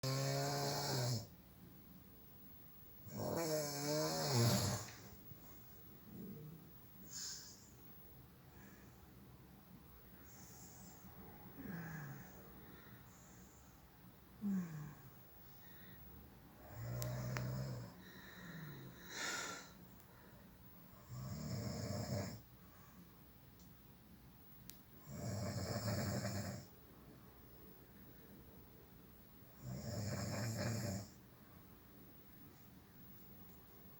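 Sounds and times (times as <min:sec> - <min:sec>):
person snoring: 0:00.0 - 0:01.3, 0:03.1 - 0:05.1, 0:14.4 - 0:15.2, 0:16.6 - 0:19.7, 0:21.0 - 0:22.4, 0:25.0 - 0:26.7, 0:29.6 - 0:31.2.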